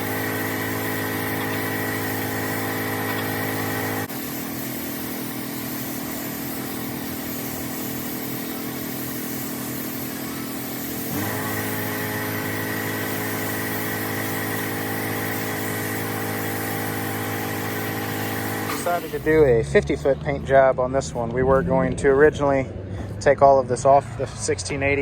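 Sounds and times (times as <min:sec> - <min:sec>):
engine running steadily: 0:00.0 - 0:25.0.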